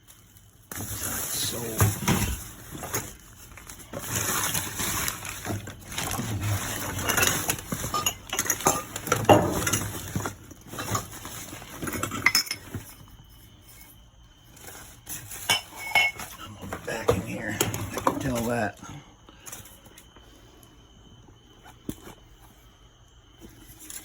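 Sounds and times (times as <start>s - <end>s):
rustling: 0.0s - 16.9s
metal items clinking and clattering: 0.0s - 18.8s.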